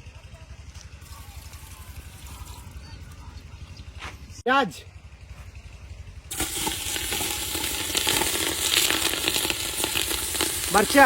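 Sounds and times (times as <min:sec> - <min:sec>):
onions sizzling in hot oil: 0:06.3 - 0:11.0.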